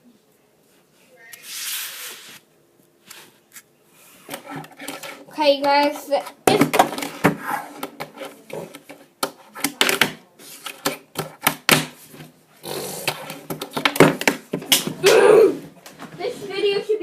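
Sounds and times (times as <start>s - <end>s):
person crying out: 15.0s - 15.7s.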